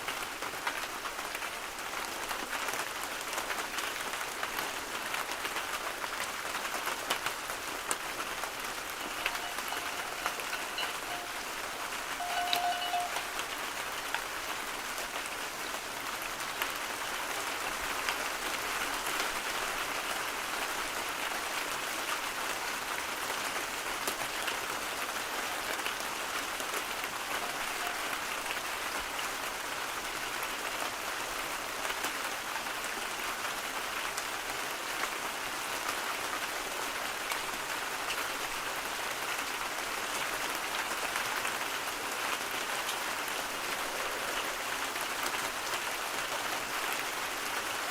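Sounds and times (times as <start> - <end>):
steady rain hiss: 0.0 - 47.9
faint ticks of drops: 9.1 - 13.4.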